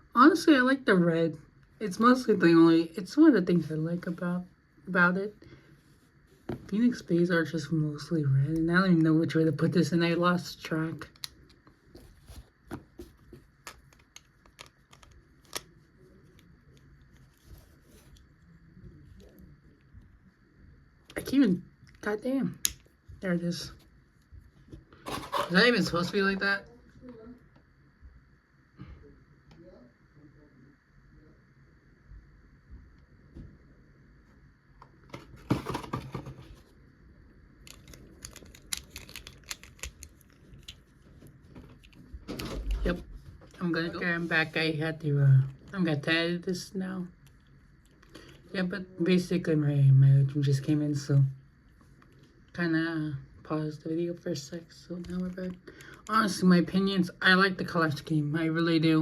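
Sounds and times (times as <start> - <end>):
plastic parts clicking: 37.7 - 40.8.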